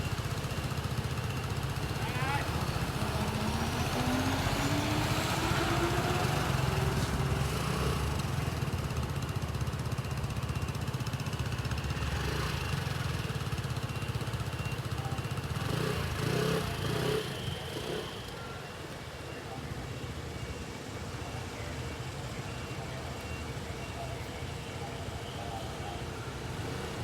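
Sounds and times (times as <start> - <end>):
diesel engine running: 0.0 - 17.5.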